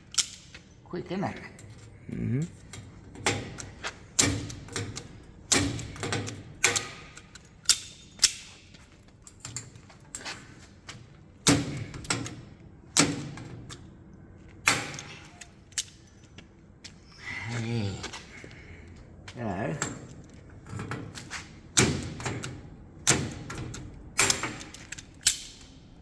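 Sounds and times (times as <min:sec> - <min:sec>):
rivet gun snapping: 0:00.1 - 0:00.5, 0:03.6 - 0:08.5, 0:21.8 - 0:25.8.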